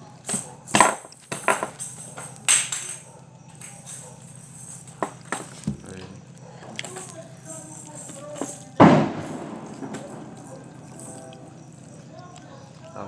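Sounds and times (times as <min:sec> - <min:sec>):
jingling rattling shakes: 0:00.1 - 0:13.0.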